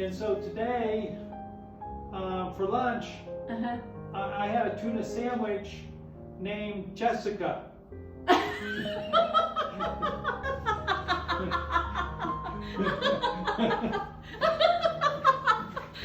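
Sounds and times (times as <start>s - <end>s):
background music: 0.0s - 16.0s
people laughing: 8.3s - 16.0s.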